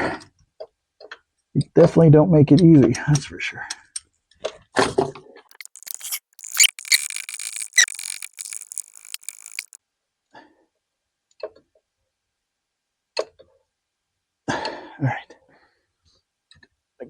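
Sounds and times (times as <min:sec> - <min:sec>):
squeaky scraping of tools: 0:05.5 - 0:09.8.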